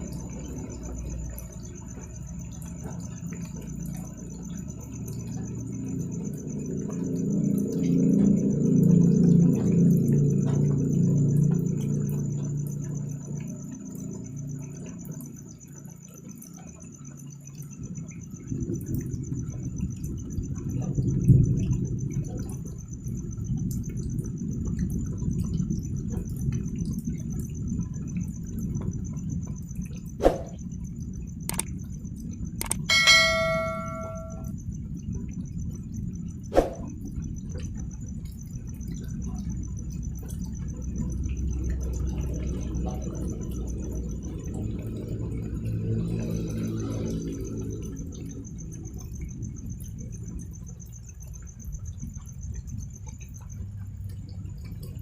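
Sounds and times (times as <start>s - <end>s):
crickets chirping: 0.0s - 55.0s
sharp clicks: 31.5s - 31.7s, 32.6s - 32.9s
metallic ding: 32.6s - 34.5s.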